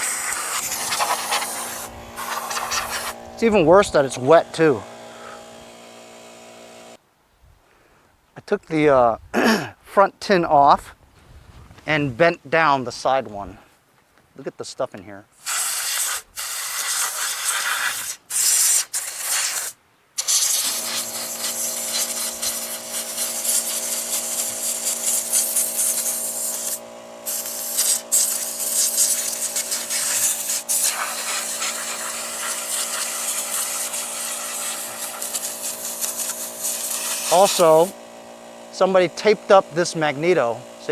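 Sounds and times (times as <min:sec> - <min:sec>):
compressed air blowgun hissing: 0:00.0 - 0:06.2, 0:15.4 - 0:38.0
machine hum: 0:00.0 - 0:07.0, 0:20.6 - 0:40.9.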